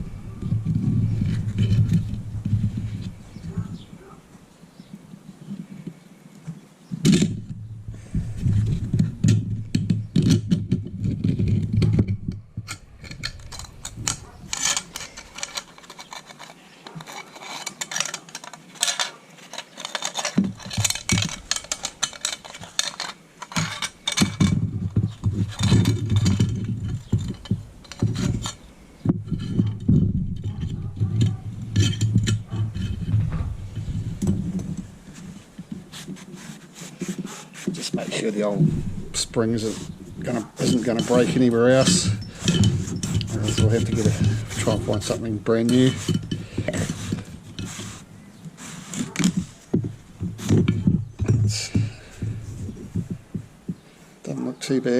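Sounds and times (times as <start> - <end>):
metal spring clinking and rattling: 7.0 - 36.0, 37.8 - 48.0.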